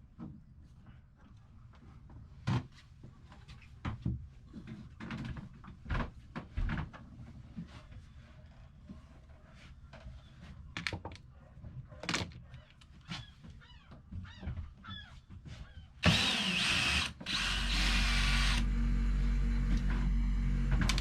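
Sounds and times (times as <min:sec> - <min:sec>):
cordless drill whining: 0:16.0 - 0:21.0.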